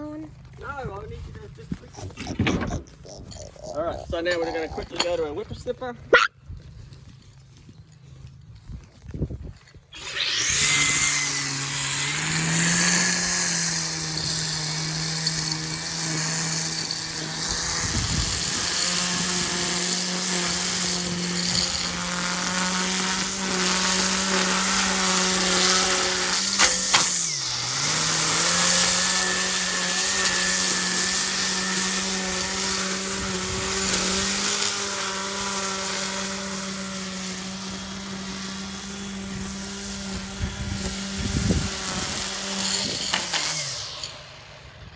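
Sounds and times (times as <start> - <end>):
line trimmer motor whine: 9.5 - 44.9.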